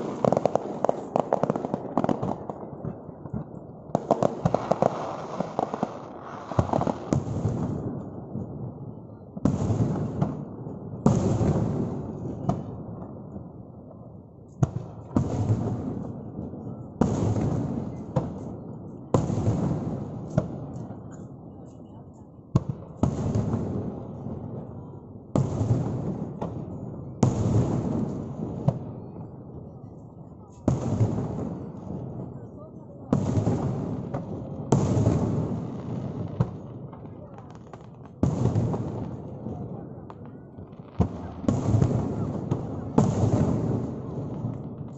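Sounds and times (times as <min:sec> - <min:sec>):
fireworks bursting with rumble: 0:00.0 - 0:44.9.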